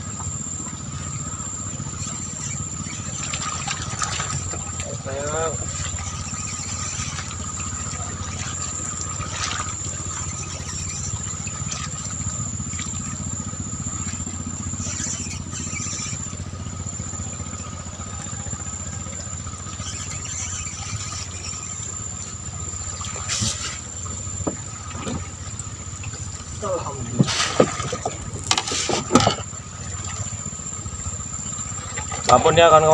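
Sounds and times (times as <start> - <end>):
high whine: 0.0 - 32.9
small engine running: 0.0 - 32.9.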